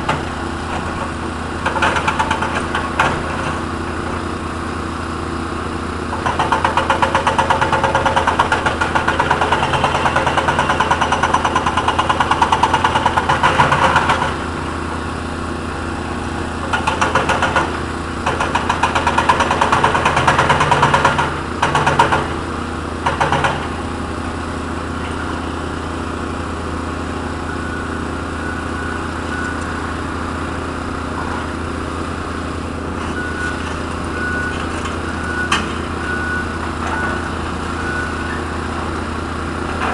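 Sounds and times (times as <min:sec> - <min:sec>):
hydraulic breaker hammer pounding: 0:00.0 - 0:04.3, 0:06.1 - 0:15.0, 0:16.5 - 0:24.0
excavator diesel engine running: 0:00.0 - 0:39.9.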